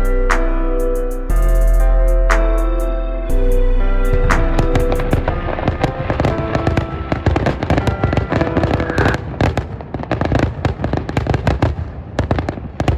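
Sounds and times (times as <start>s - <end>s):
music: 0.0s - 9.5s
fireworks crackling and popping: 5.1s - 12.9s.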